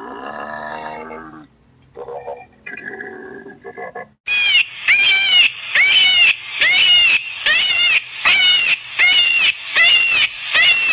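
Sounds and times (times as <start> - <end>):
animal high-pitched calls: 3.8 - 10.9.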